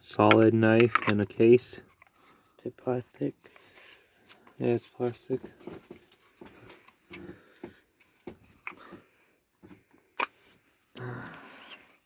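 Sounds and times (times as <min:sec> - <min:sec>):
knife and plastic sheath clicking: 0:00.3 - 0:01.2.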